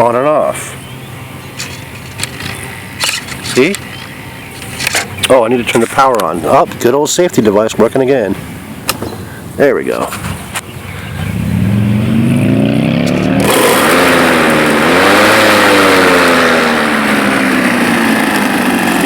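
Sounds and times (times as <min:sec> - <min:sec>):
electric lawn mower motor whine: 0:00.8 - 0:05.3, 0:11.3 - 0:19.0.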